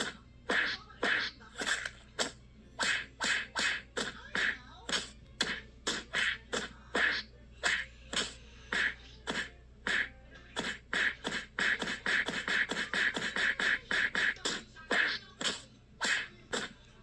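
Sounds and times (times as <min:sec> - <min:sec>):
punching hits: 0:10.6 - 0:16.7.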